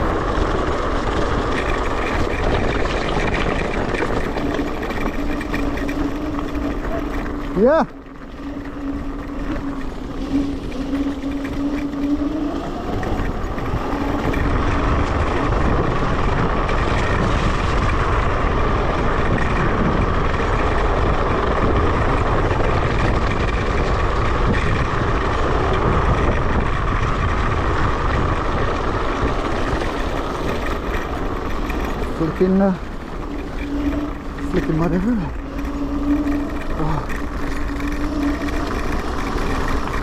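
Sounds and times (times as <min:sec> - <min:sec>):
electric scooter motor whine: 0:00.0 - 0:40.0
tyres on track: 0:00.0 - 0:40.0
wind on microphone: 0:00.0 - 0:40.0.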